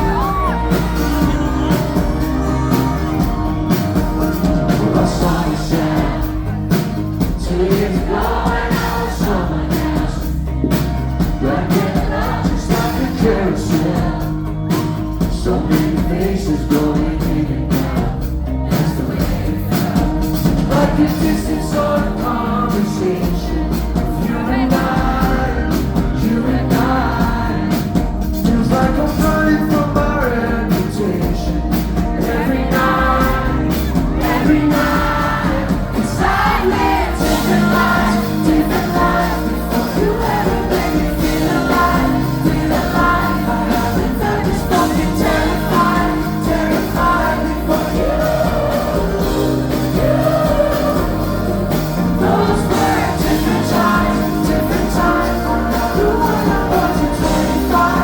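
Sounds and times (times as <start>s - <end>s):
lead vocals: 0.0s - 58.0s
live pop band: 0.0s - 58.0s.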